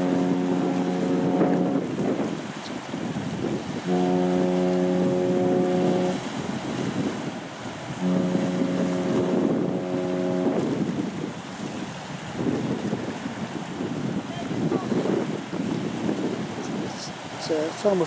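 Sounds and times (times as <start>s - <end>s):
ship's horn blasts: 0.0s - 12.4s
wind on microphone: 0.0s - 18.0s.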